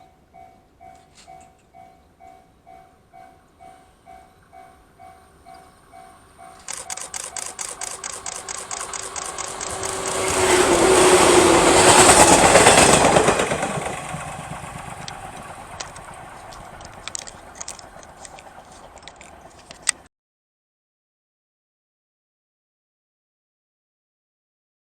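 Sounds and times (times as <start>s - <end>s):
train rushing past: 5.8s - 20.0s
scattered clicks: 6.6s - 10.7s, 14.8s - 20.1s.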